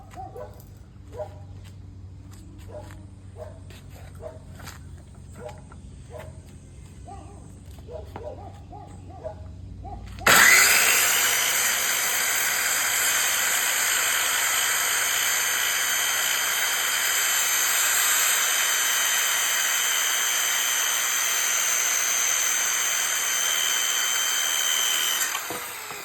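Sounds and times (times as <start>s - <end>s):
circular saw whining and cutting: 10.2s - 26.0s.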